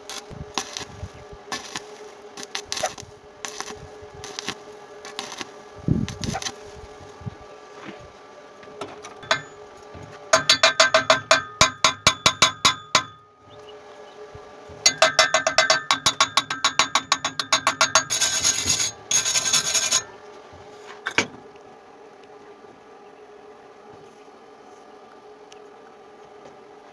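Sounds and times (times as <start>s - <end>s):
harsh metal scraping: 14.8s - 20.2s
rasping strokes on steel pipe: 14.9s - 20.2s.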